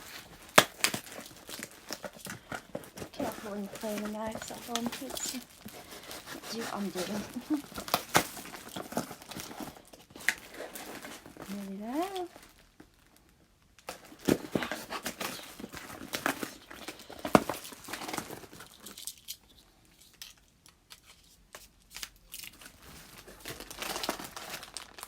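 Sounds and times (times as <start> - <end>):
cardboard box tearing: 0.0 - 11.6, 14.0 - 18.7.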